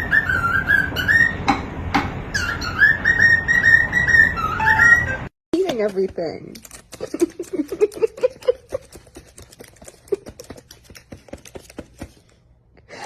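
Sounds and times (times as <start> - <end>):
pet crunching and chewing food: 5.6 - 12.4.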